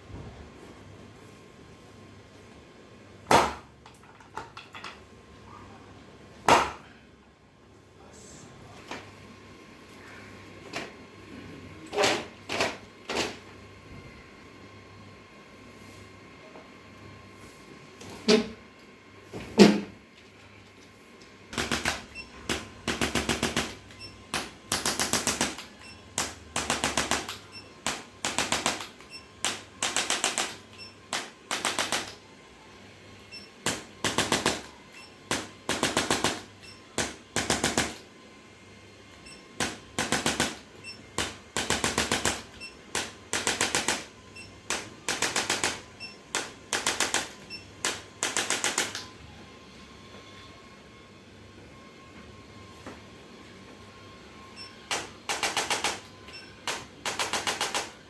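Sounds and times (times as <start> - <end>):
rapid mechanical tapping bursts: 21.5 - 32.2, 33.4 - 38.0, 39.2 - 49.0, 54.9 - 58.0.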